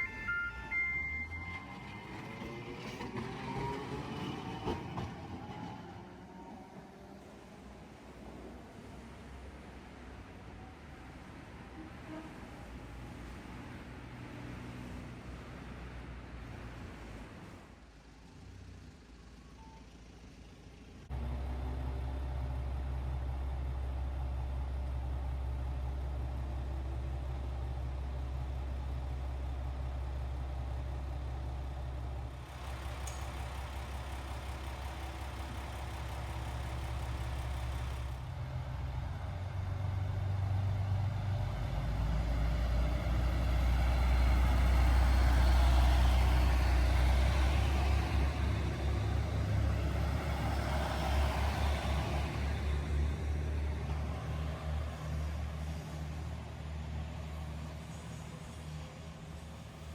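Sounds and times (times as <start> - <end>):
train running noise: 0.0 - 18.7, 28.4 - 39.7
railcar diesel engine rumble: 0.0 - 59.9.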